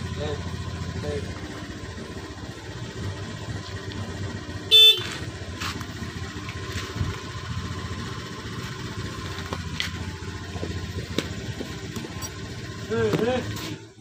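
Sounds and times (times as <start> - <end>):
motorcycle engine idling: 0.0 - 14.0
horn beep: 4.6 - 5.3.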